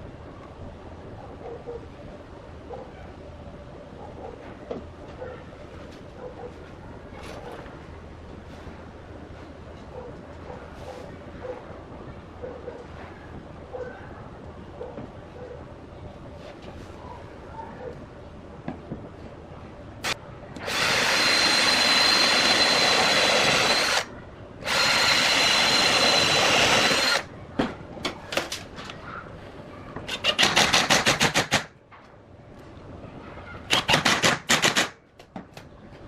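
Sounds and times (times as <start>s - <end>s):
power tool whining: 20.0s - 27.3s.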